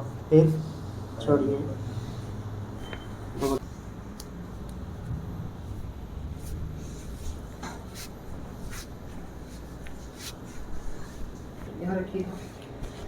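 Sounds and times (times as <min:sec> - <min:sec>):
steady low hum: 0:00.0 - 0:13.0
hands rubbing skin and clothing: 0:05.6 - 0:13.0.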